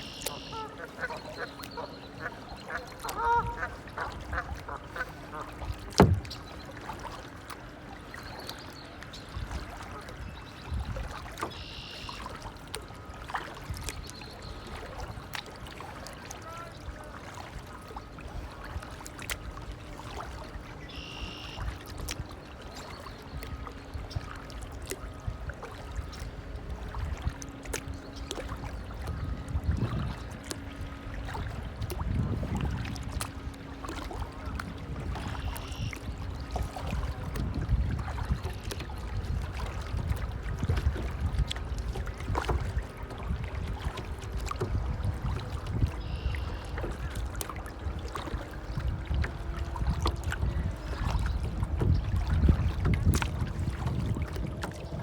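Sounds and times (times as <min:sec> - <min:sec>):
waterfowl quacking: 0:00.0 - 0:05.6.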